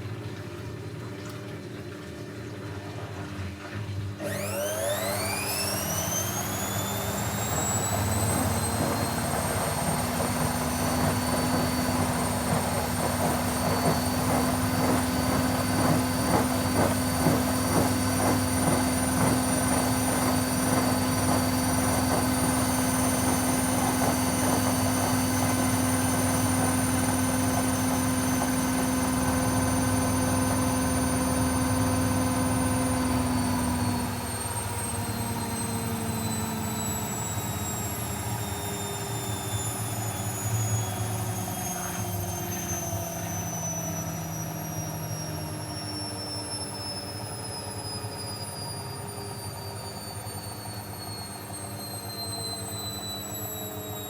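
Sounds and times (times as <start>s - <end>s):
washing machine spinning: 0.0s - 54.0s.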